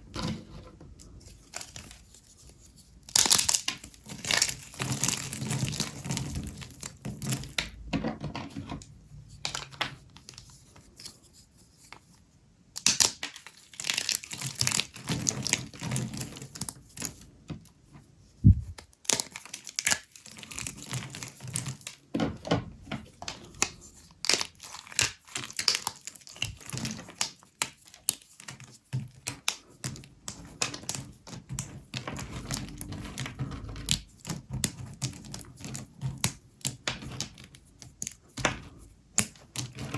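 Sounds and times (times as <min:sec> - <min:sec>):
brittle soap crackling and crunching: 0:00.9 - 0:07.9, 0:12.7 - 0:17.4, 0:18.7 - 0:39.9.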